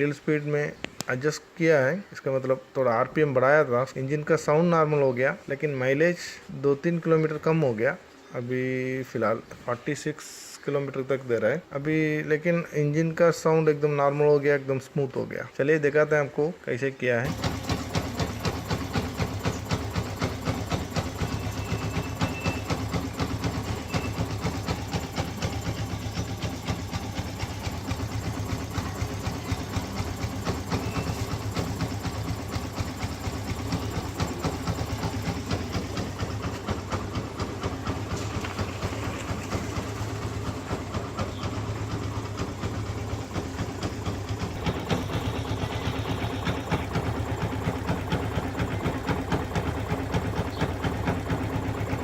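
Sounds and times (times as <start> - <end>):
motorcycle engine idling: 17.2 - 52.0.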